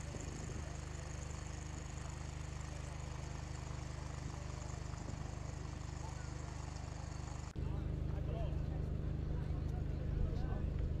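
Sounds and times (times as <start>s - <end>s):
engine idling: 0.0s - 11.0s.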